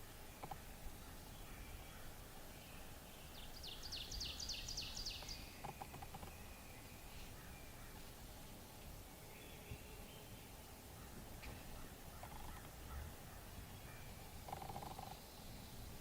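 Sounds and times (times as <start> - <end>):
low background hiss and rumble: 0.0 - 16.0
songbird trilling: 1.3 - 8.0.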